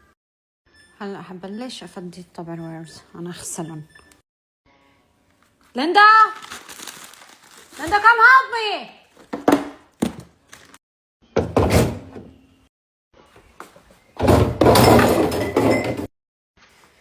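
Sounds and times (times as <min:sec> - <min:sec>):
clattering and knocking: 0:14.2 - 0:16.1.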